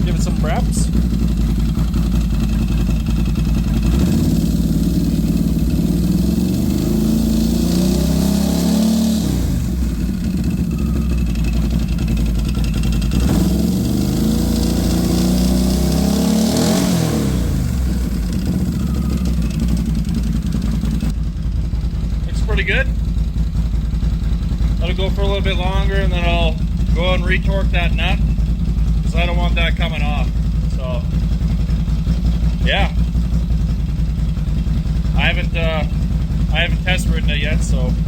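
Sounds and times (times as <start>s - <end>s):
atv engine revving: 0.0s - 38.0s.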